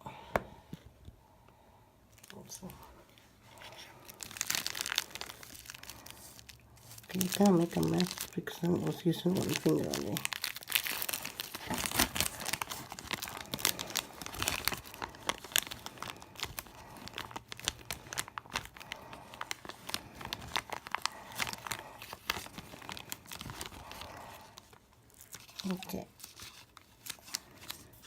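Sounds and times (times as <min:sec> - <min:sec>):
plastic sheet crinkling: 0:02.2 - 0:28.0.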